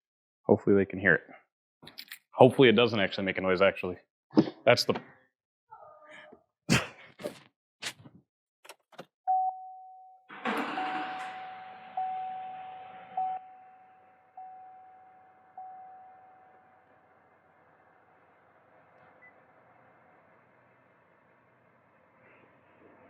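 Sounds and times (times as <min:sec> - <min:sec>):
warning chime dinging: 0:09.3 - 0:16.9
diesel engine cranking and starting: 0:10.3 - 0:12.2
faint engine hum: 0:15.5 - 0:23.0.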